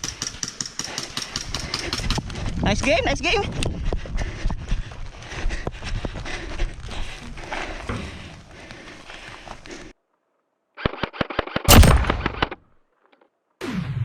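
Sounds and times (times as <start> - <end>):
gunshots: 11.3 - 12.6.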